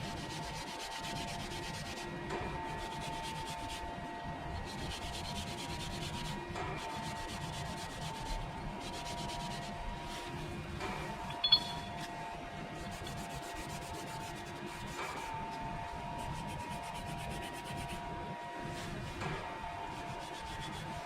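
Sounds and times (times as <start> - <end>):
machine hum with tones: 10.4 - 12.9.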